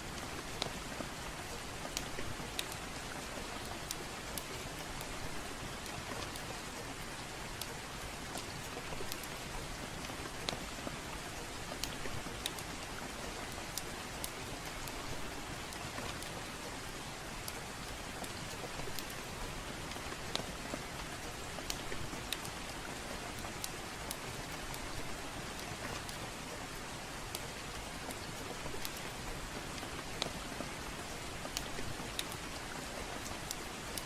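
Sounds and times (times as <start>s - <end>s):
rainfall hiss: 0.0s - 34.0s
wood fire crackling: 0.0s - 34.0s.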